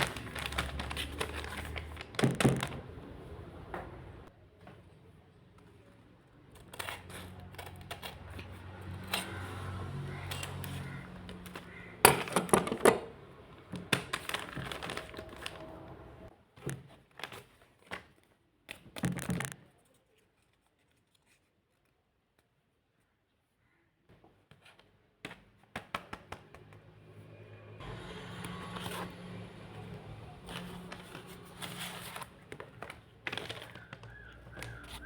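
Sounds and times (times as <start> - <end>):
plastic packaging crinkling: 0.0 - 3.0, 13.7 - 16.0, 28.0 - 35.0
sharp plastic crackles: 0.0 - 3.2, 5.6 - 16.0, 16.6 - 22.6, 27.9 - 35.0.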